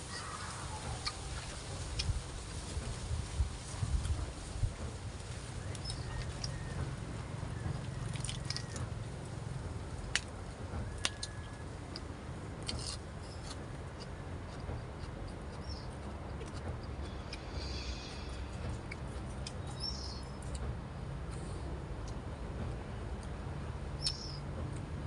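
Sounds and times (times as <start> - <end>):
wind buffeting microphone: 0.0 - 9.8.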